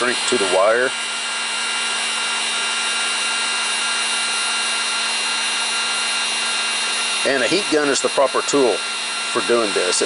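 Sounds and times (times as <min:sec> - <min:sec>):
heat gun blowing hot air: 0:00.0 - 0:10.0.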